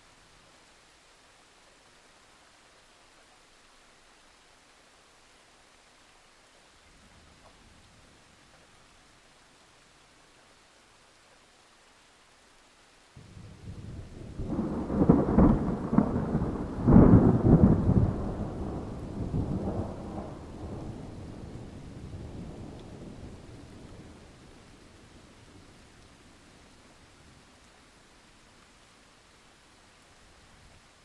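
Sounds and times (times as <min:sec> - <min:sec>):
faint steady hiss: 0:00.0 - 0:31.0
thunder rumbling and cracking: 0:13.2 - 0:24.3.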